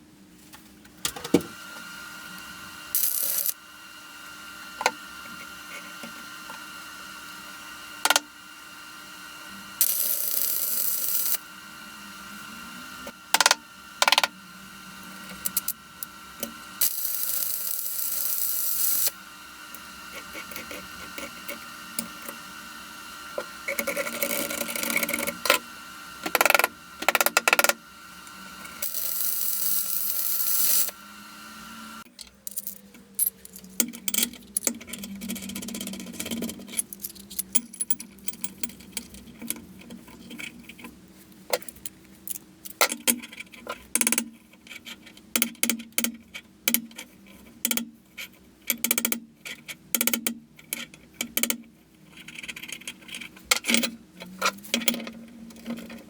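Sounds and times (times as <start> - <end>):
machine running: 1.1 - 33.7
machine winding down: 4.3 - 32.0.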